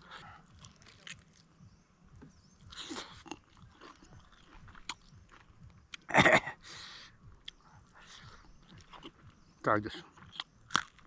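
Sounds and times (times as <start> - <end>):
person chewing: 0.0 - 1.5, 2.6 - 6.2, 7.4 - 11.0.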